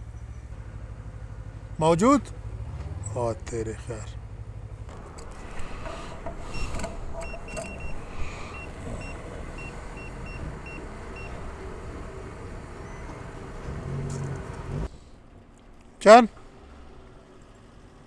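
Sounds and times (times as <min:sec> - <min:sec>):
motorcycle engine rumbling: 0:01.8 - 0:15.5.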